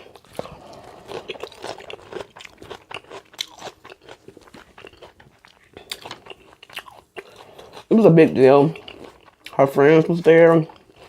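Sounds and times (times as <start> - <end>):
chewing crunchy salad: 0.0 - 11.0.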